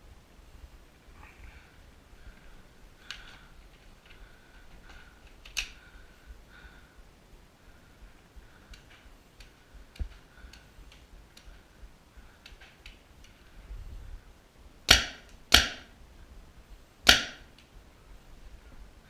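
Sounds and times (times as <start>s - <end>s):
paintball marker pops: 14.9s - 15.9s, 17.1s - 17.5s.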